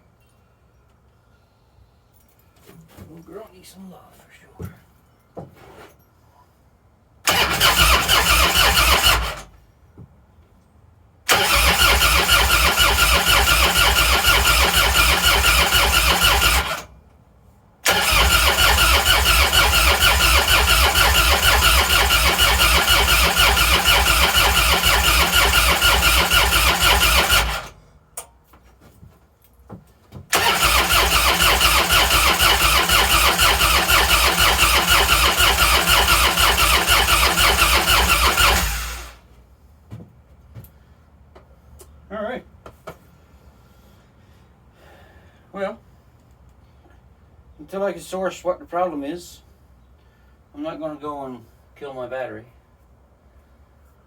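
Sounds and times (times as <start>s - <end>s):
motorcycle starter cranking: 7.3s - 9.6s, 11.3s - 16.9s, 17.8s - 27.8s, 30.3s - 39.2s.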